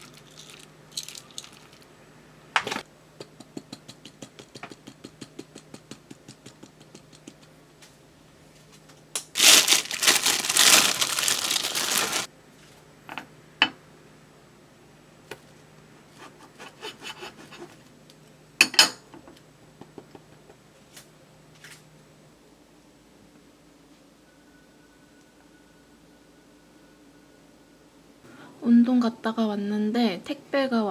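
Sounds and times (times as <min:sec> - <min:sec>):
crinkling: 0:00.0 - 0:01.8, 0:09.4 - 0:12.3.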